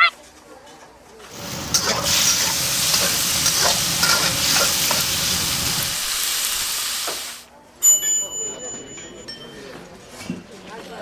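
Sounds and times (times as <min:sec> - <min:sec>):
food frying in hot oil: 0:01.3 - 0:07.5.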